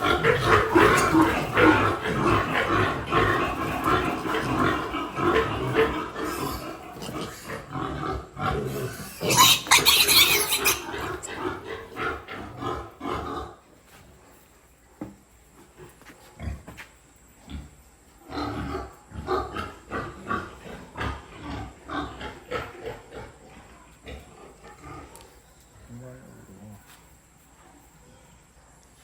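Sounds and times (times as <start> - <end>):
pigs grunting and squealing: 0.0 - 13.6, 17.5 - 25.2.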